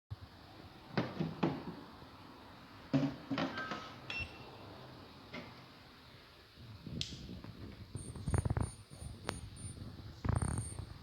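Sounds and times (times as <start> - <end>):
knocks and clunks of handling: 0.9 - 1.8.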